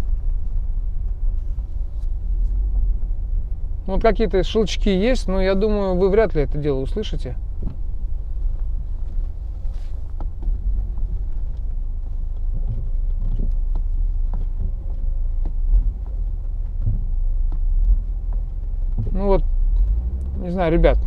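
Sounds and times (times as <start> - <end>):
low road rumble in car cabin: 0.0 - 21.0
soft thumps: 7.4 - 20.0.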